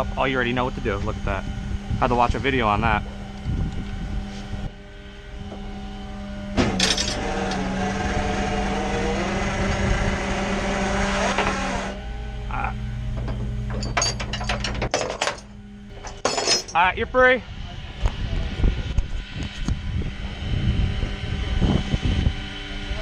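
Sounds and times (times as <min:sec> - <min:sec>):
truck engine idling: 0:02.6 - 0:16.3
winch running: 0:04.8 - 0:16.9
metallic clanks of winch hook: 0:13.2 - 0:15.4.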